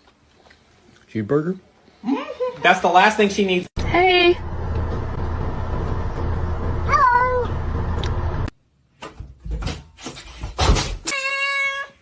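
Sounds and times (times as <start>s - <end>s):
cat meowing: 6.9s - 7.5s, 11.0s - 12.0s.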